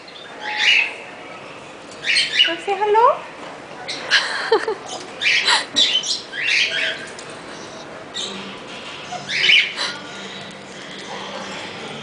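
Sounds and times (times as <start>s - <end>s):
parrot chirping calls: 0.1s - 1.1s, 2.0s - 2.7s, 4.9s - 11.0s.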